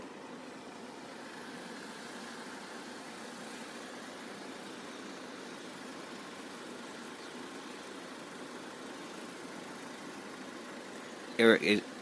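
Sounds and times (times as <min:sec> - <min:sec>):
even hiss: 0:00.0 - 0:12.0
road vehicles idling: 0:00.0 - 0:12.0.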